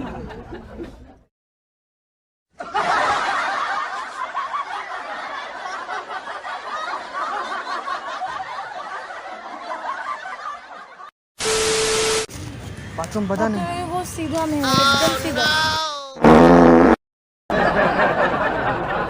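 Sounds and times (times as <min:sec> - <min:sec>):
crowd laughing: 0:00.0 - 0:01.3, 0:02.6 - 0:11.1, 0:17.5 - 0:19.0.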